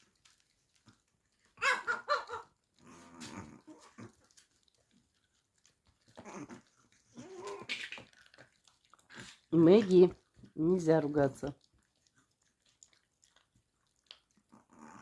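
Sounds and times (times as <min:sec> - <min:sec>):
small dog growling: 0:01.6 - 0:04.4, 0:06.0 - 0:09.8, 0:14.4 - 0:15.0.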